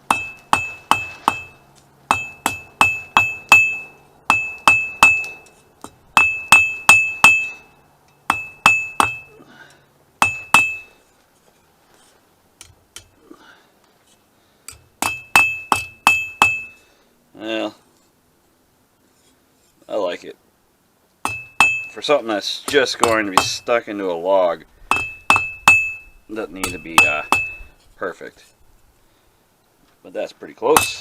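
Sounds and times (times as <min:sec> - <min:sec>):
hammer ringing on anvil: 0:00.1 - 0:05.5, 0:06.2 - 0:09.4, 0:10.2 - 0:11.0, 0:15.0 - 0:16.8, 0:21.3 - 0:22.0, 0:24.9 - 0:27.7.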